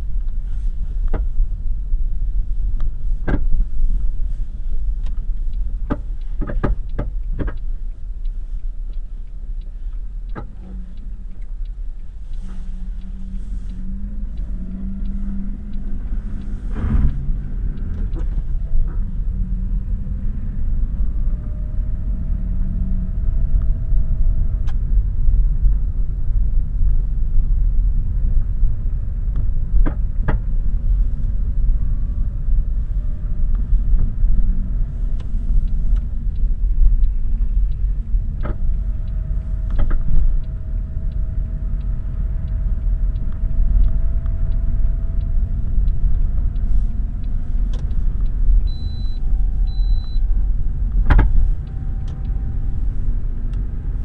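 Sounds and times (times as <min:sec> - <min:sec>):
car engine and road rumble: 0:00.0 - 0:54.0
short high beeps: 0:48.7 - 0:50.2.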